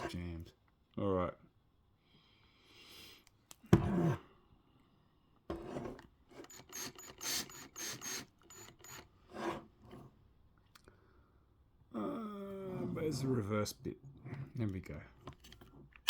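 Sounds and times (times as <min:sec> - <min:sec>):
hand drill stuttering bursts: 0:06.4 - 0:09.1.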